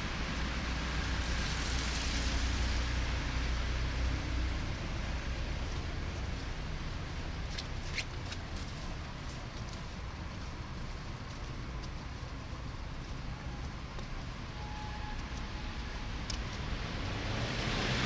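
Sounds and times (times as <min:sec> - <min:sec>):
vehicle passing with tyre hiss: 0:00.0 - 0:05.4, 0:15.5 - 0:18.0
traffic noise: 0:00.0 - 0:18.0.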